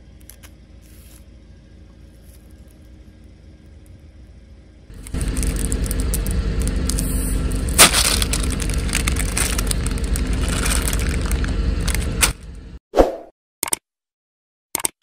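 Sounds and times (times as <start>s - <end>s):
car rolling rumble: 0.0s - 12.8s
objects cracking and crunching: 4.9s - 12.5s.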